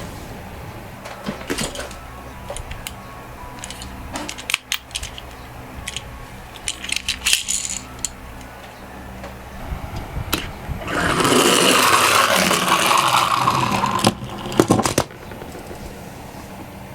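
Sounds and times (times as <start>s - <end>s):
toy cars clicking and rattling: 1.6s - 8.5s, 11.0s - 15.8s
toy car rolling down slope: 10.9s - 15.8s.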